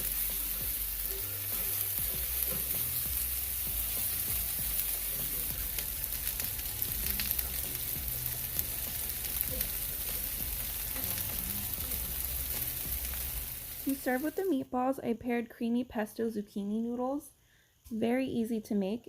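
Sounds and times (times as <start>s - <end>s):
meatballs sizzling in oil: 0.0s - 14.5s.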